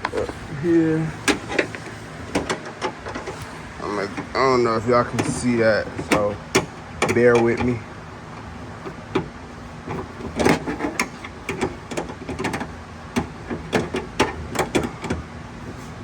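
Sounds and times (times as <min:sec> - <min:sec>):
hand tools clicking and knocking: 0:05.0 - 0:07.8, 0:09.9 - 0:15.2.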